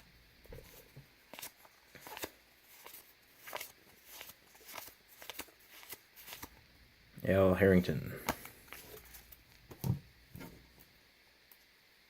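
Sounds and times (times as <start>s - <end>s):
cards swishing and clicking: 0.6s - 6.5s, 8.2s - 10.5s.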